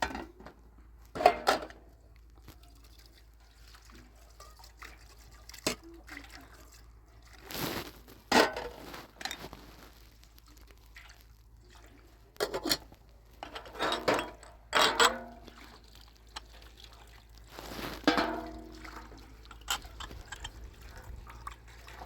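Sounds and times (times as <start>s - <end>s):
dishes and pots clattering: 1.2s - 1.8s, 8.3s - 9.4s, 12.4s - 15.6s, 17.7s - 22.0s
water splashing: 15.2s - 22.0s.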